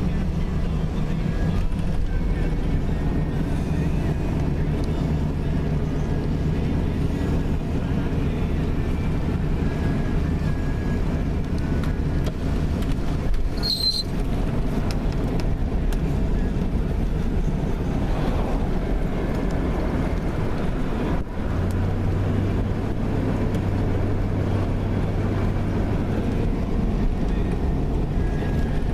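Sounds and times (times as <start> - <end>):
car engine and road noise: 0.0 - 28.9
brief high-pitched squeak: 13.5 - 14.2.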